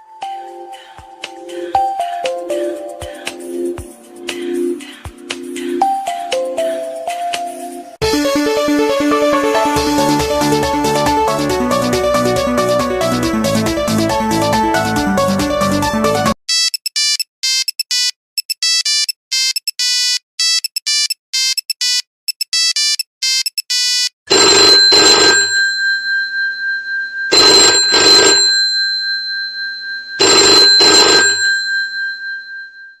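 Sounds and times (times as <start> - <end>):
electronic beep ringtone: 16.5 - 25.5, 27.3 - 28.4, 30.2 - 31.4
telephone bell ringing: 23.8 - 33.0.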